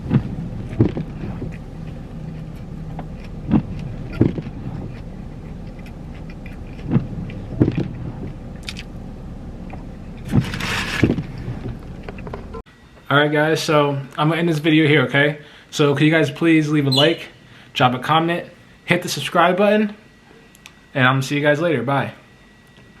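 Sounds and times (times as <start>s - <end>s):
person biting and chewing: 0.0s - 9.0s
steady low hum: 0.0s - 23.0s.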